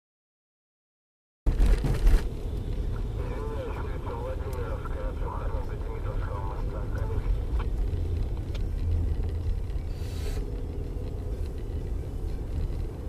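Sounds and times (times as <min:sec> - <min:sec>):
car engine and road noise: 0:01.5 - 0:13.0
brief hiss: 0:09.9 - 0:10.4.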